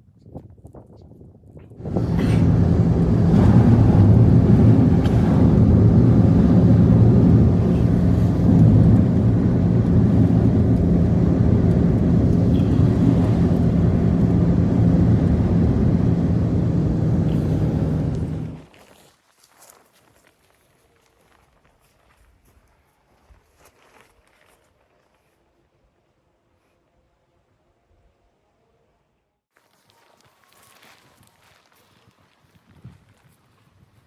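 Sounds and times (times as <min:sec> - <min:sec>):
engine humming steadily: 0:01.8 - 0:18.7.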